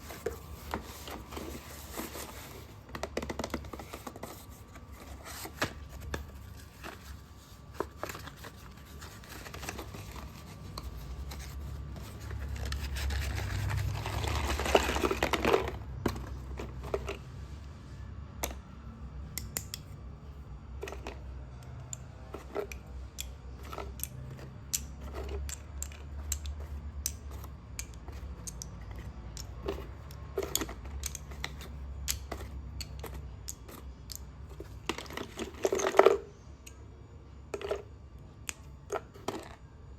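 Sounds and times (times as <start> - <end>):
slate pencils crunching and snapping: 7.8 - 17.2, 20.8 - 36.8.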